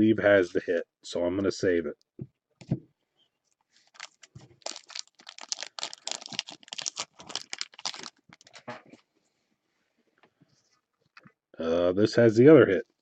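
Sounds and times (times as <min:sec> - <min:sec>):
card pack wrappers crinkling: 0:03.8 - 0:08.7.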